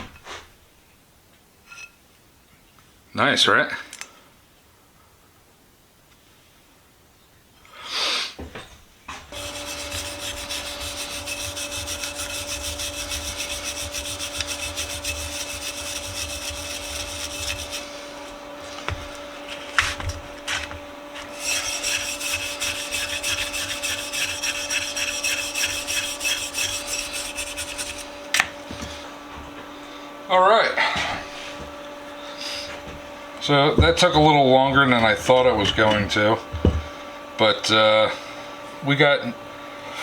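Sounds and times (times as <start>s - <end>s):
steady hum: 9.2s - 39.9s
paint scraping strokes: 9.3s - 28.2s
sharp knocks: 33.8s - 36.9s.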